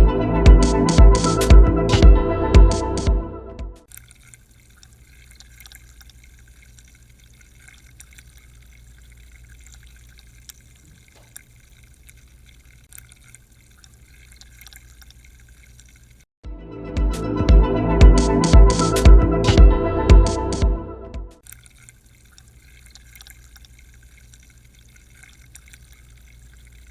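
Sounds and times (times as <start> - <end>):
faint water dripping: 3.8 - 16.3, 21.4 - 26.9.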